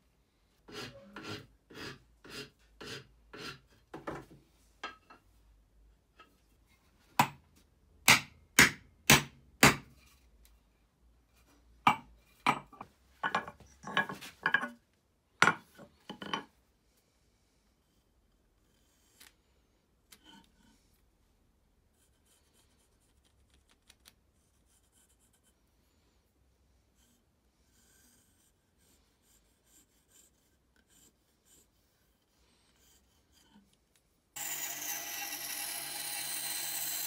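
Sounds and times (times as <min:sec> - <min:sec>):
hand tool scraping wood: 0:00.6 - 0:03.9.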